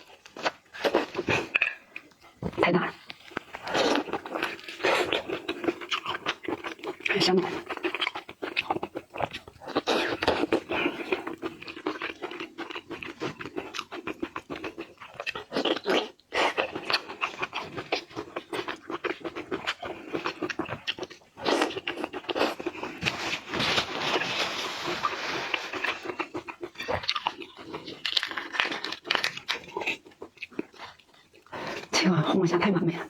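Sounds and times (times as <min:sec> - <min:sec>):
crunching and chewing seafood: 0:00.0 - 0:33.0.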